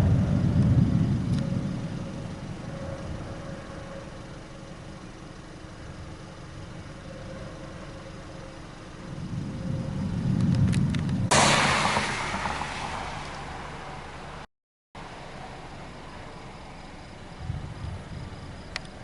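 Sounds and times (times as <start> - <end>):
car engine and road noise: 0.0 - 19.0
sudden loud rush of noise: 11.3 - 14.5.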